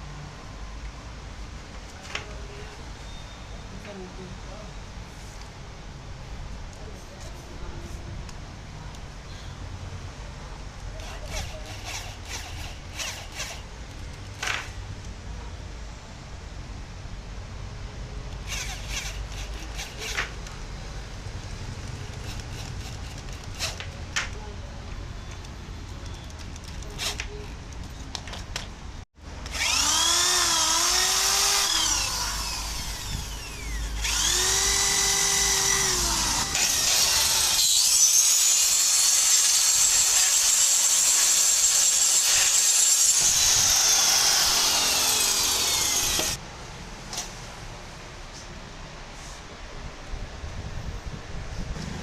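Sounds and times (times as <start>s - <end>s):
power tool motor whining: 11.0s - 13.6s, 18.4s - 20.3s, 29.4s - 46.4s.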